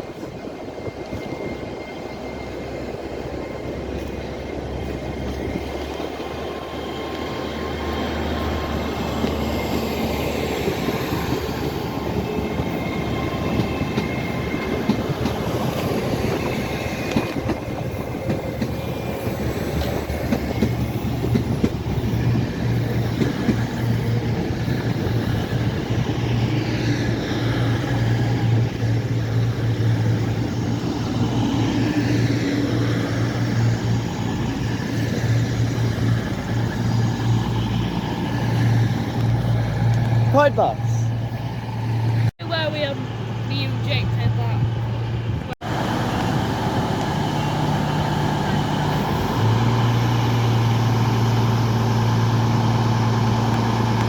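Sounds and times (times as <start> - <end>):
train running on rails: 0.0 - 54.0
low engine hum: 41.1 - 54.0.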